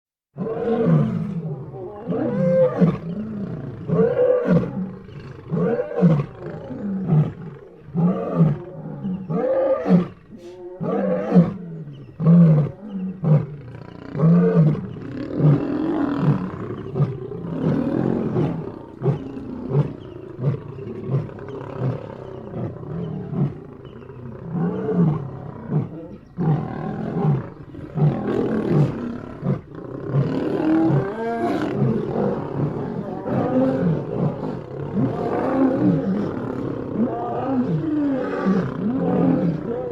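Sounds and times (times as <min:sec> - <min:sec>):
lions roaring: 0:00.4 - 0:39.9.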